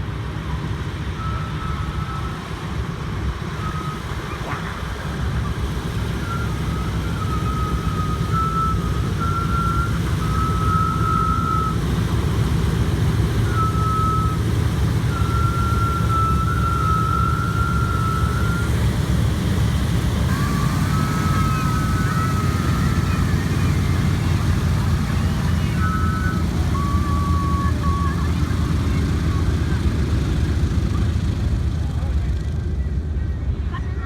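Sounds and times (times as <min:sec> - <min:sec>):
aircraft engines droning: 0:00.0 - 0:34.0
thin high tone: 0:03.6 - 0:30.1.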